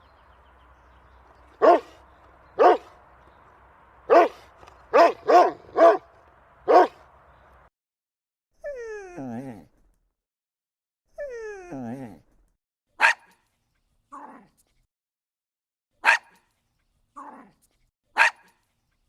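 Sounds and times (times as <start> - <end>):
dog barking sharply: 1.6 - 2.0, 2.6 - 2.9, 4.1 - 6.1, 6.7 - 7.0, 13.0 - 13.3, 16.0 - 16.4, 18.2 - 18.5
quiet low dog barks: 1.6 - 2.0, 2.6 - 3.0, 4.1 - 6.1, 6.7 - 7.0.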